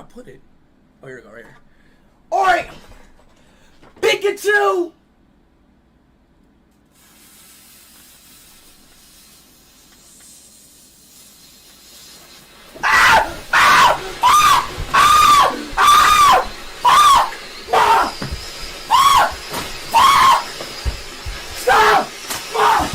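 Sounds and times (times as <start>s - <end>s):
firework fizzing: 6.9s - 14.9s
firework shrieks: 7.0s - 22.9s.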